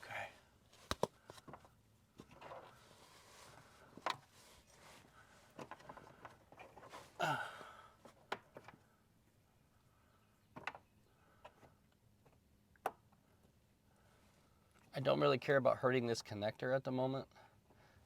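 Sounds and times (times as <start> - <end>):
person breathing: 7.1 - 8.0
person sighing: 7.2 - 8.0.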